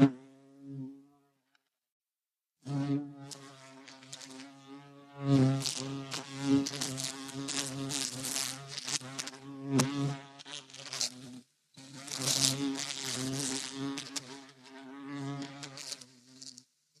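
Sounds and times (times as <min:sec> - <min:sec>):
bumblebee buzzing: 0:02.7 - 0:16.7.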